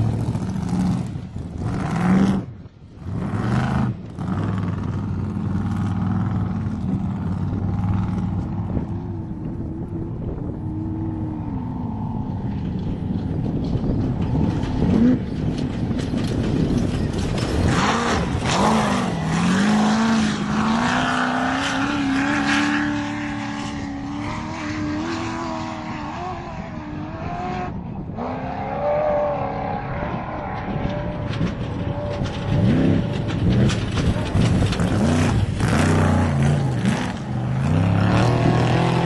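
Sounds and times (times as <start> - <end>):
tyres on dirt: 0.0 - 39.0
race engine revving and passing: 17.4 - 39.0.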